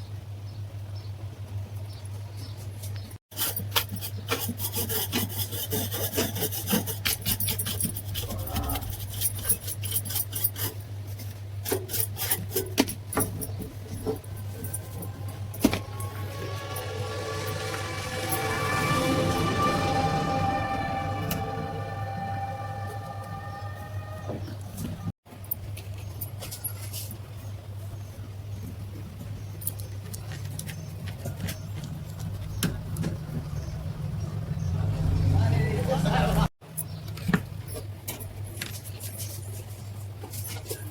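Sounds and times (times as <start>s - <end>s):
fan parts scraping and clicking: 2.8s - 20.2s
electric fan motor humming: 13.8s - 22.7s.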